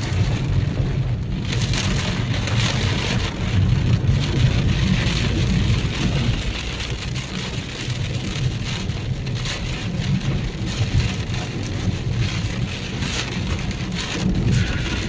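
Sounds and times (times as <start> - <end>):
heavy rain splashing: 0.0 - 15.0
steady low rumble: 0.0 - 15.0.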